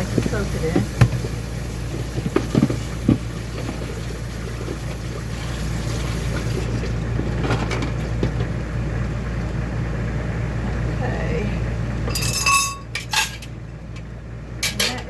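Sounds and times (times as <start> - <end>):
water running into sink: 0.0 - 7.3
silverware clinking: 12.1 - 13.5, 14.6 - 15.0.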